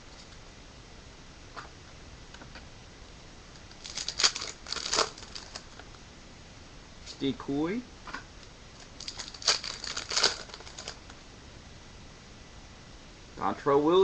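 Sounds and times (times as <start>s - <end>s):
foil wrapper crinkling: 3.6s - 5.8s, 8.8s - 11.1s.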